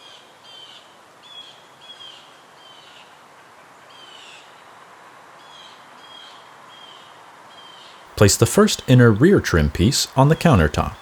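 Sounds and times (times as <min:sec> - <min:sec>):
outdoor background hiss: 0:00.0 - 0:11.0.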